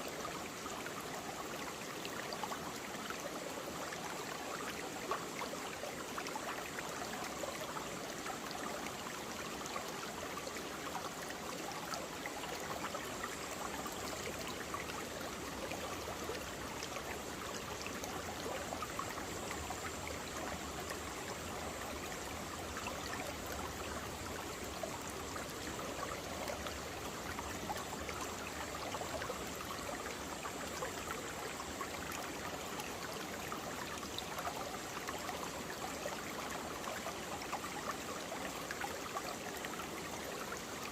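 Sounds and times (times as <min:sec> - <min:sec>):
stream flowing over rocks: 0:00.0 - 0:40.9.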